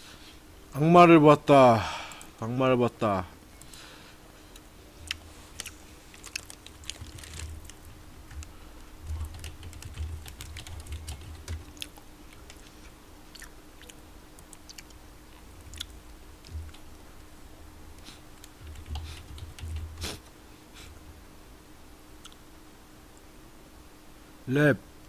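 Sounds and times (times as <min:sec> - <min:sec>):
faint steady hum: 0:00.0 - 0:25.0
soft low thumps: 0:16.4 - 0:16.9.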